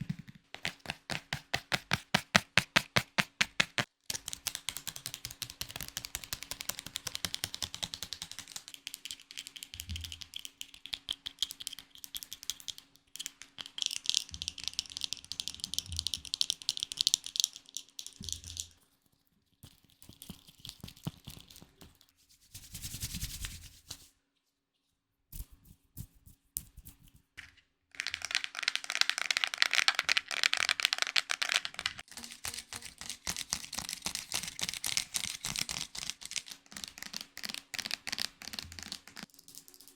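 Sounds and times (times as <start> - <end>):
rapid tapping and clicking: 0.5 - 18.8, 28.0 - 39.3.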